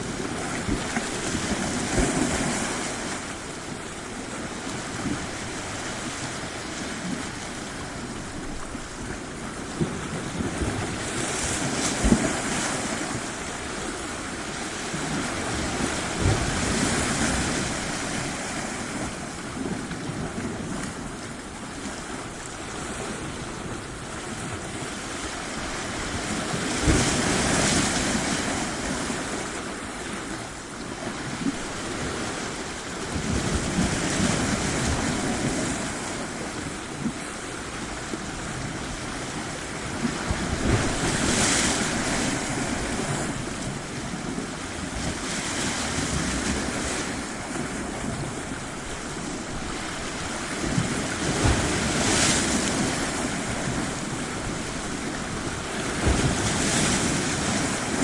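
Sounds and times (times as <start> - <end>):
waves breaking on shore: 0.0 - 58.0
wind buffeting microphone: 0.0 - 58.0.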